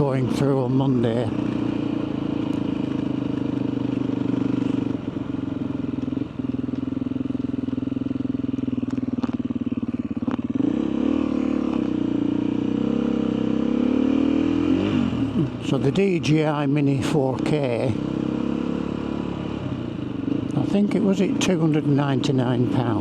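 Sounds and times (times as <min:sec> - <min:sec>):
motorcycle engine running: 0:00.0 - 0:23.0.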